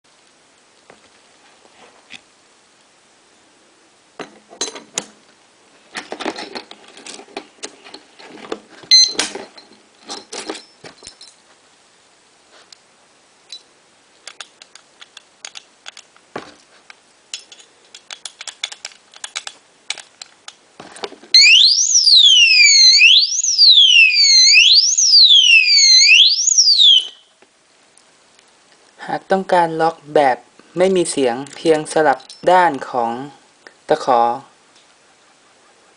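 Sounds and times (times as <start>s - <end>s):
padlock clicks and rattles: 17.4s - 20.6s
electronic alarm siren wailing: 21.4s - 27.3s.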